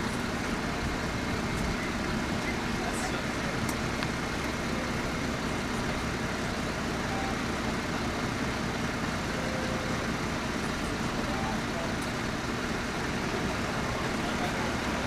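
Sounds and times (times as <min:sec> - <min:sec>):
fire truck engine idling: 0:00.0 - 0:15.0.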